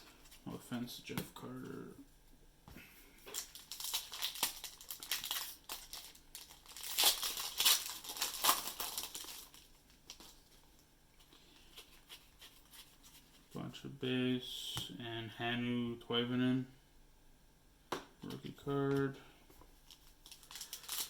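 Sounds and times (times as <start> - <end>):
foil wrapper crinkling and tearing: 3.3 - 10.8, 19.8 - 21.0.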